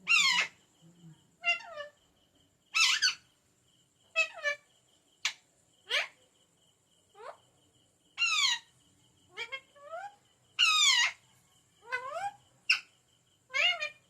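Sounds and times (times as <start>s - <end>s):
parrot chirps and calls: 0.0s - 0.7s, 1.4s - 2.1s, 2.7s - 3.3s, 4.0s - 6.2s, 7.1s - 7.4s, 8.2s - 14.0s.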